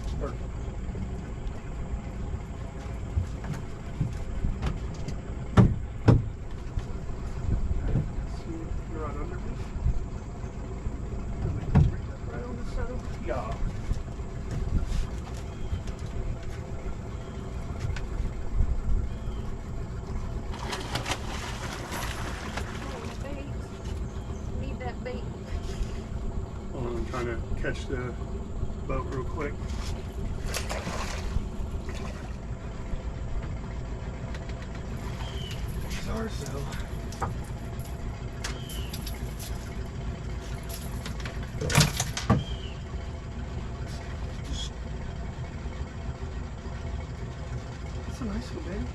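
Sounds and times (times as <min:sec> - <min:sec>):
boat motor rumbling: 0:00.0 - 0:48.9
loud knocks: 0:05.5 - 0:06.3.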